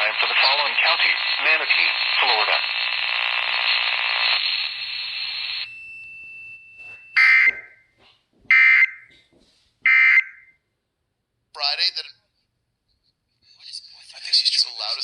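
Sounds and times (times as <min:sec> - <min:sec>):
radio static hiss: 0:00.0 - 0:05.6, 0:13.6 - 0:15.0.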